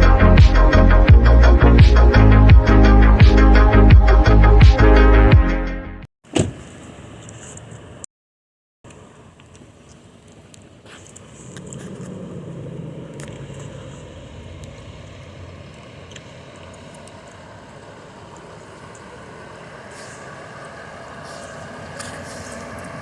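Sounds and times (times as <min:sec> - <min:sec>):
fire truck engine rumbling: 0:08.9 - 0:23.0.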